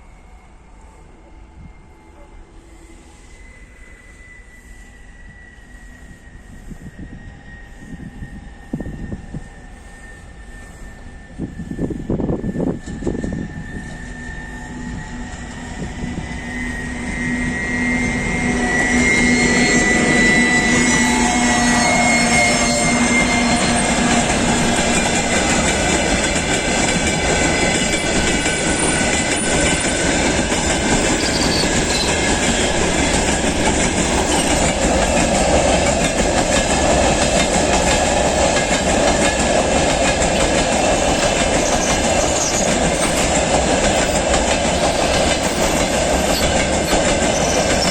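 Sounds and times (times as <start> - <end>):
train wheels clattering: 12.3 - 47.9
high steady tone: 13.3 - 37.8.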